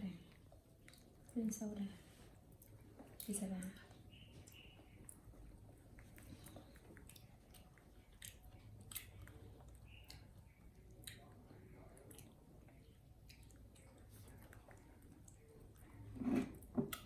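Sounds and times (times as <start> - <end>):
monkey chewing food: 4.0 - 16.0.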